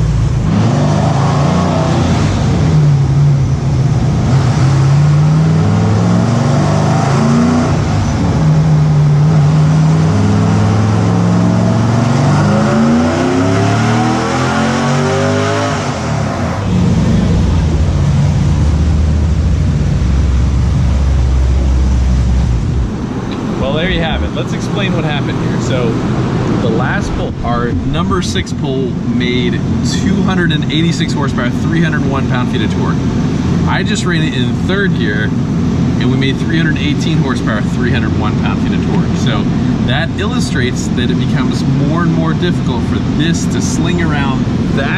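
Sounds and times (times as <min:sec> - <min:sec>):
engine revving on a dyno: 0:00.0 - 0:23.6.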